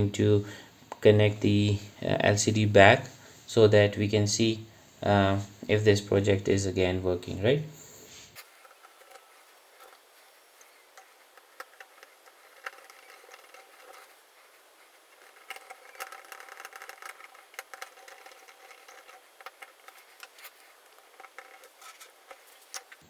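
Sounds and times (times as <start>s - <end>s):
small parts clicking and rattling: 8.4s - 23.0s.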